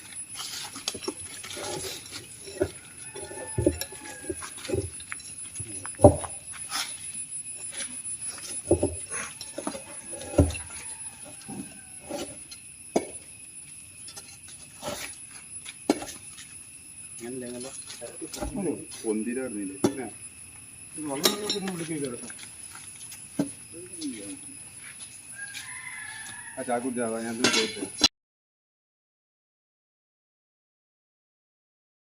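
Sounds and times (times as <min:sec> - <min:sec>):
knocks and thumps: 0:00.8 - 0:06.5, 0:08.4 - 0:10.8.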